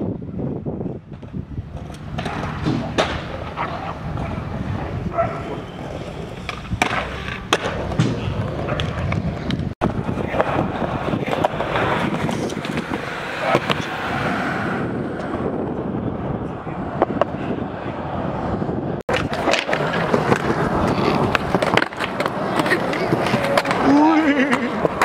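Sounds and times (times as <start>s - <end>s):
skateboard wheels rolling on pavement: 0.0s - 25.0s
skateboard clacking on ground: 1.1s - 14.0s, 19.1s - 25.0s.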